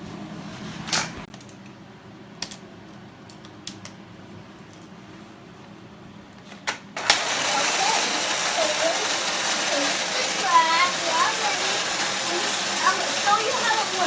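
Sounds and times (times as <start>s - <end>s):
toy cars and plastic track clicking: 7.0s - 14.0s.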